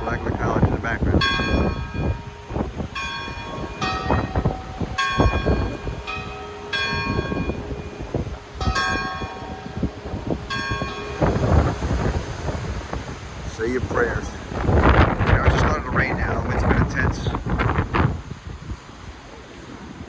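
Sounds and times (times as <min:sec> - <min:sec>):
church bells ringing: 0:00.0 - 0:14.8
wind rumbling on microphone: 0:00.0 - 0:20.0.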